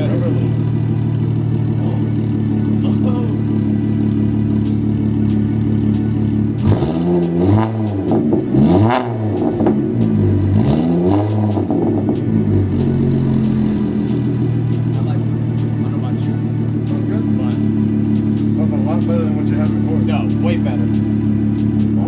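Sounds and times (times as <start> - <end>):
car engine idling: 0.0 - 22.0
engine revving: 0.0 - 22.0.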